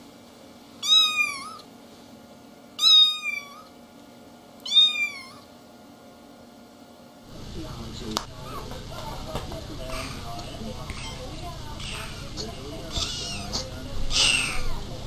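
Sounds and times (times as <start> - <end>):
kitten meowing: 0.8 - 1.6, 2.8 - 3.7, 4.6 - 5.5, 12.9 - 14.8.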